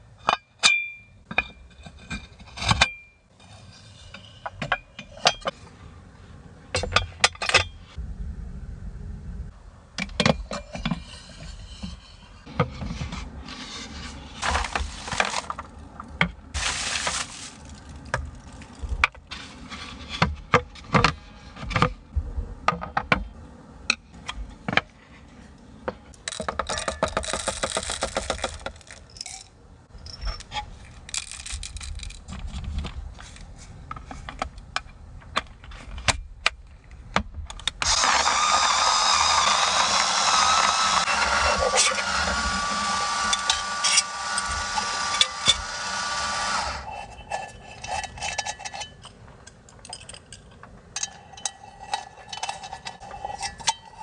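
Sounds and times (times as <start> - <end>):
rustling or hissing: 13.3 - 15.6, 16.6 - 19.9
small hard objects clinking: 14.4 - 15.8, 16.6 - 19.0, 26.2 - 32.3.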